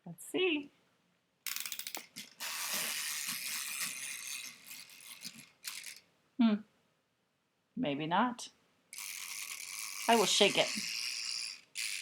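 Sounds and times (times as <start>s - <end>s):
clockwork whirring and rattling: 1.5s - 6.0s, 8.9s - 12.0s
ratchet clicks of winding toy: 1.5s - 6.0s, 8.9s - 12.0s.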